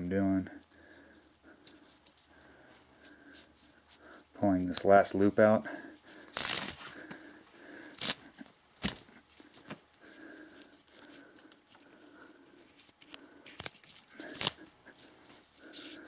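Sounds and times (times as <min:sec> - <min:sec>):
cord rustling: 0:05.9 - 0:16.0.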